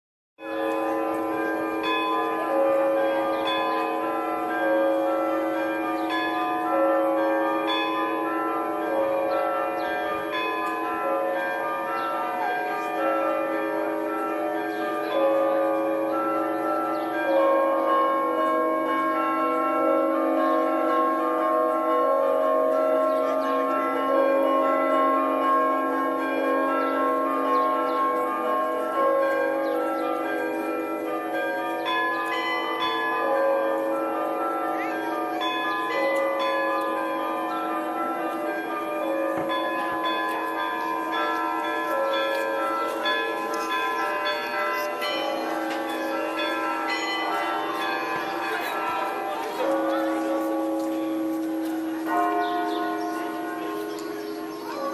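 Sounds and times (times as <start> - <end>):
church bells ringing: 0.4 - 54.9.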